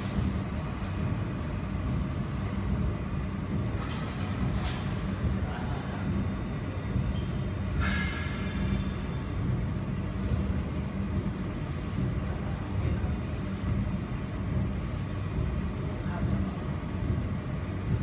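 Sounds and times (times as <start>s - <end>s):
low rumbling hum: 0.0s - 18.0s.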